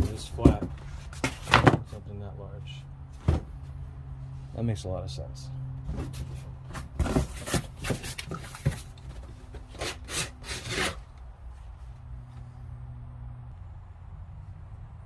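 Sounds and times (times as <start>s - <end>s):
packaging scraping and rustling: 6.1s - 11.0s.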